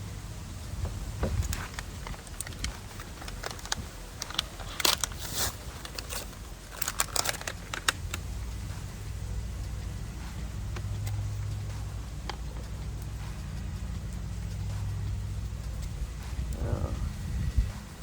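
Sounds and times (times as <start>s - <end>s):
wind rumble on microphone: 0.0s - 5.2s, 13.7s - 18.0s
plastic packaging crinkling: 1.2s - 8.2s.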